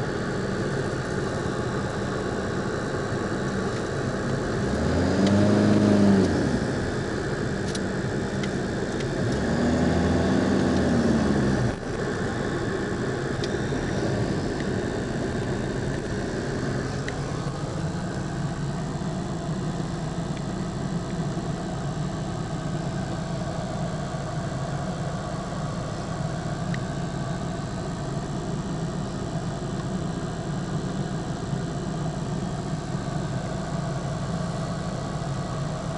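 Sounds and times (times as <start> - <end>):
engine running: 0.0 - 35.9.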